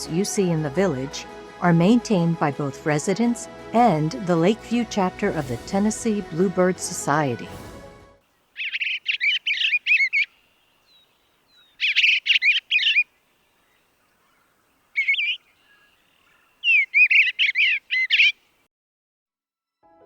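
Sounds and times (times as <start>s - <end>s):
bluebird singing: 8.4s - 18.6s.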